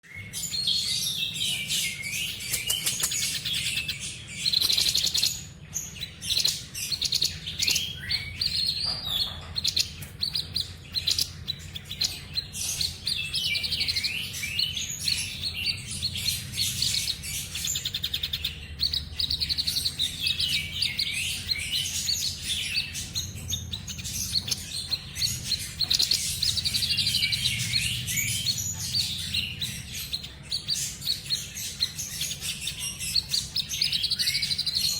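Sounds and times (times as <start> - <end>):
bird singing chattering trills: 0.0 - 34.9.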